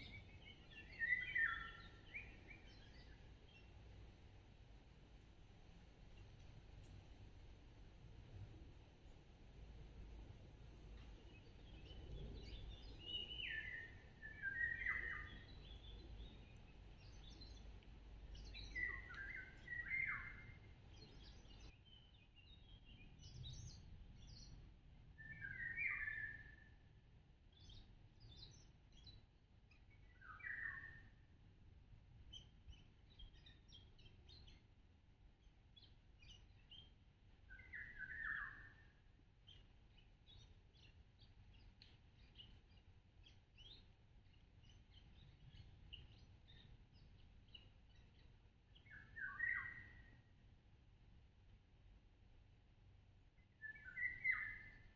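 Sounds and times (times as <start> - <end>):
faint high bird chirps: 0.0 - 3.6, 11.4 - 17.6, 18.4 - 24.6, 25.2 - 26.8, 27.5 - 31.3, 35.7 - 50.3, 53.4 - 54.9
bird singing: 0.0 - 3.7, 11.3 - 17.7, 18.3 - 24.6, 25.2 - 26.8, 27.5 - 31.2, 37.5 - 50.3, 53.4 - 54.9.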